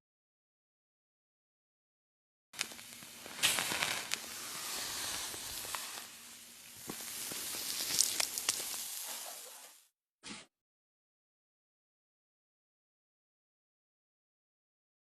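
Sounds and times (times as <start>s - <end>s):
fire crackling and popping: 2.6s - 9.9s.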